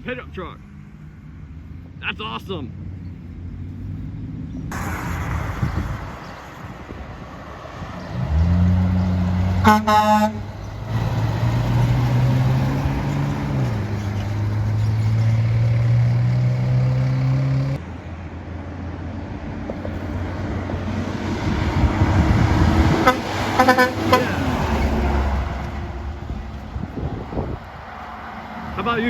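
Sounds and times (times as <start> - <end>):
truck horn blast: 9.5 - 10.5, 22.9 - 26.2.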